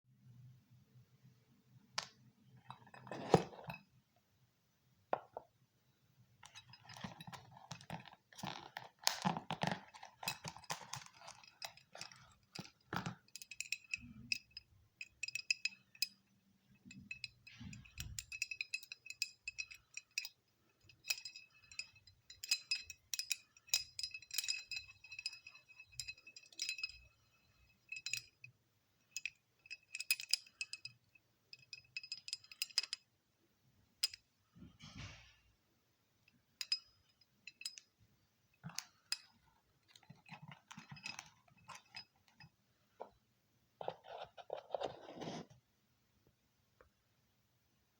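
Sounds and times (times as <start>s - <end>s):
fidget spinner clicks and clinks: 16.8s - 28.5s, 29.1s - 33.0s
rustling and rubbing: 43.8s - 45.6s.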